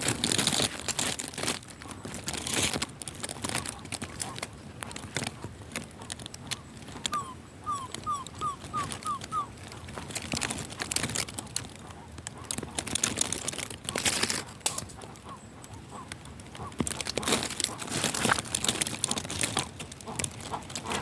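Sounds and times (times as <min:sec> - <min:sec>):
crackling rustles: 0:00.0 - 0:21.0
bird giving short falling yelps: 0:07.1 - 0:09.5.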